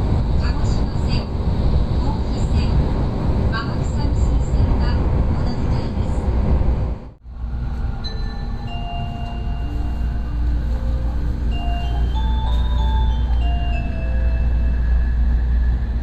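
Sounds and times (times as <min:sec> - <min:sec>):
train running rumble: 0:00.0 - 0:16.0
bell-like announcement chime: 0:08.0 - 0:15.4.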